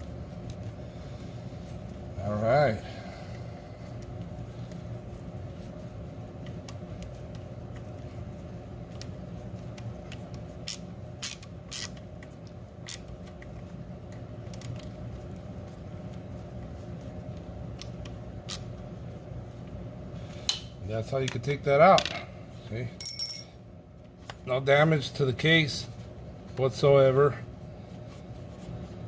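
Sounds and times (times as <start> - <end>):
steady low hum: 0.0 - 29.0
metal tools clinking: 23.0 - 23.5.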